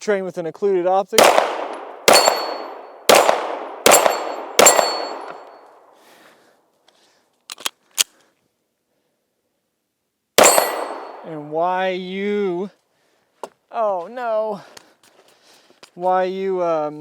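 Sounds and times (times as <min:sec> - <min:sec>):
pistol shots with echo: 0:01.2 - 0:06.0, 0:10.4 - 0:11.4.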